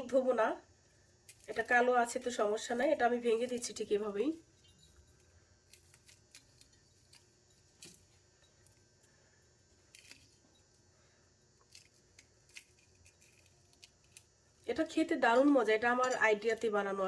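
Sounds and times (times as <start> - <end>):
chillies snapping: 5.6 - 8.0, 11.6 - 14.3.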